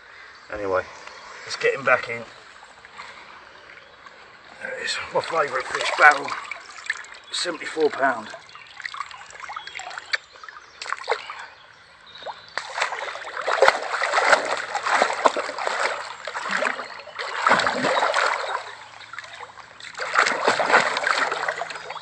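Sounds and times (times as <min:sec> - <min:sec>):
water splashing: 0:04.6 - 0:11.5, 0:12.2 - 0:22.0.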